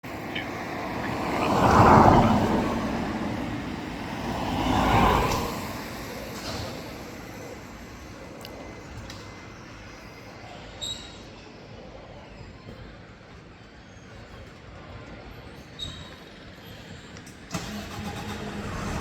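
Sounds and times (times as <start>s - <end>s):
vehicles passing: 0.0s - 10.1s, 16.4s - 19.0s.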